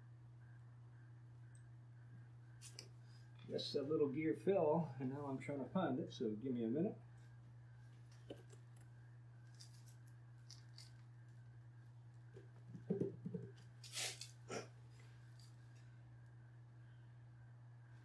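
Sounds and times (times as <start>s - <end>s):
steady low hum: 0.0s - 18.0s
small parts clicking and rustling: 8.1s - 11.1s.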